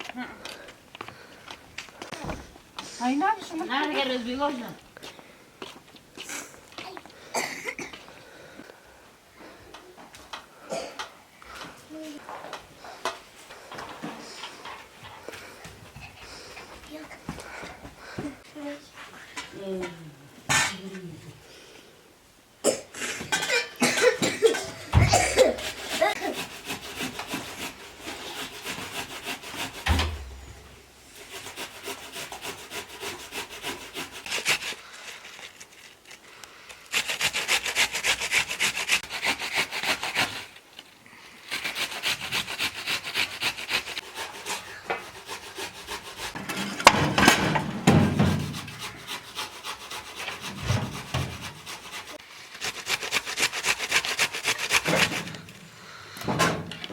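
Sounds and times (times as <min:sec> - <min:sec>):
rasping strokes on wood: 0:25.0 - 0:34.8, 0:36.9 - 0:40.6, 0:41.5 - 0:46.7, 0:48.2 - 0:55.4
low thuds: 0:29.9 - 0:31.0.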